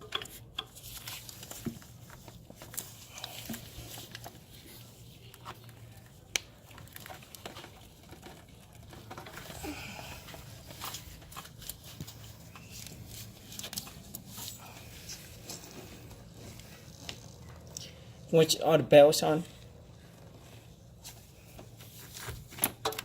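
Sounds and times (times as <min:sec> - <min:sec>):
small clicks and rustles: 0:00.0 - 0:18.3.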